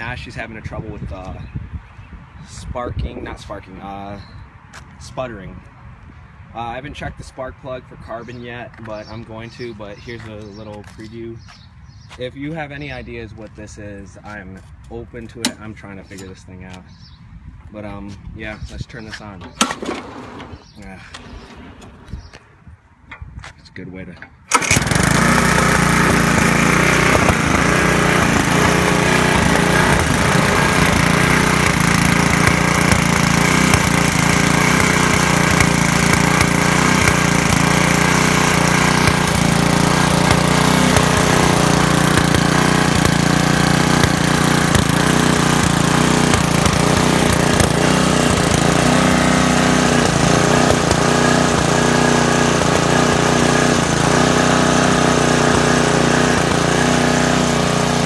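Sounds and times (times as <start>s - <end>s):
lawn mower engine sputtering: 19.2s - 23.4s, 24.0s - 58.0s.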